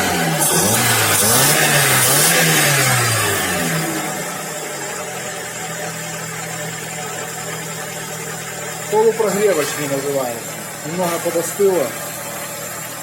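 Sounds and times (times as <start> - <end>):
car engine revving and idling: 0.0 - 13.0.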